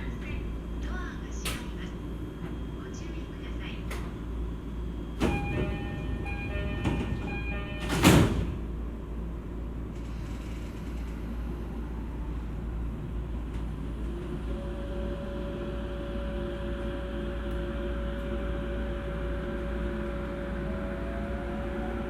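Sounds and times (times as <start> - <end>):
train motor whine: 4.7 - 8.8, 9.8 - 22.0
train door-closing chime: 5.2 - 8.6
sliding doors shutting with thud: 5.2 - 8.8.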